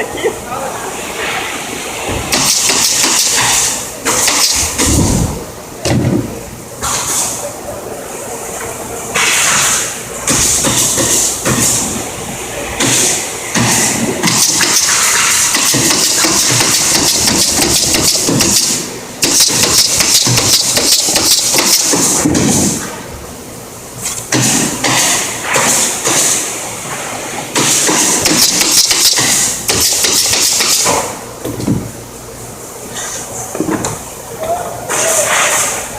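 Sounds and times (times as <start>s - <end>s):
pneumatic stapler shots: 2.3s - 5.2s, 6.8s - 7.4s, 9.2s - 11.9s, 12.8s - 22.9s, 24.0s - 26.5s, 27.5s - 31.8s
compressed air hiss: 9.2s - 22.8s.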